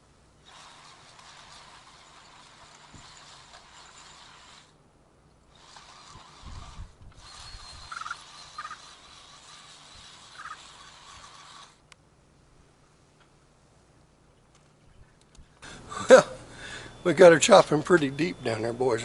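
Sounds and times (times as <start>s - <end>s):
electric tool motor under load: 0.4s - 4.8s, 5.5s - 11.9s.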